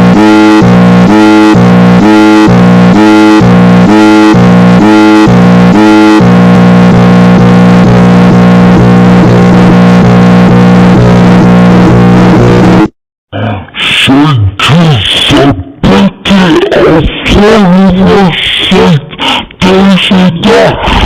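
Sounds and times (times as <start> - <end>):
synthesized alarm chords: 0.0 - 12.9.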